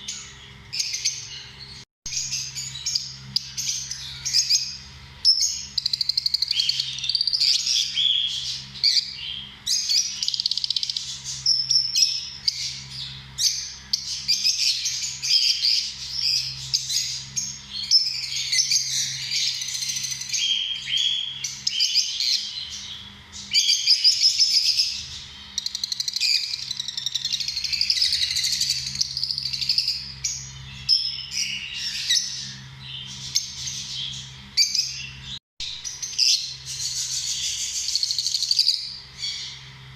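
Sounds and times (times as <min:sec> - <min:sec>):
lovebirds chirping: 0:00.0 - 0:39.9.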